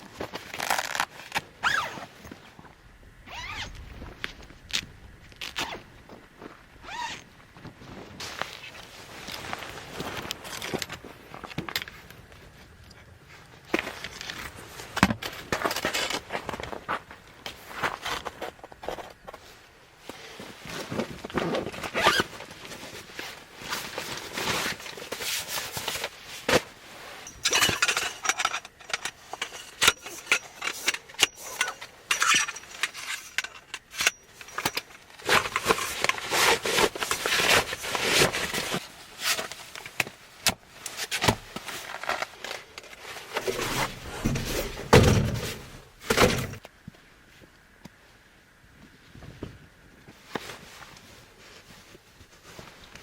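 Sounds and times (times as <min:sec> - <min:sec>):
objects rustling and clinking: 0:23.7 - 0:46.7.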